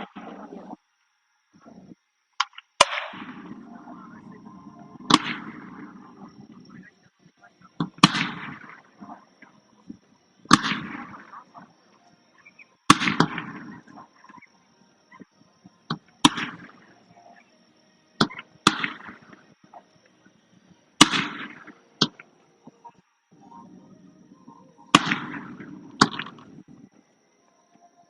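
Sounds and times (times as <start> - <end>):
fireworks bangs: 2.8 - 6.8, 7.8 - 9.2, 10.4 - 11.5, 12.9 - 13.9
fireworks rumble: 2.8 - 12.2, 23.4 - 27.0.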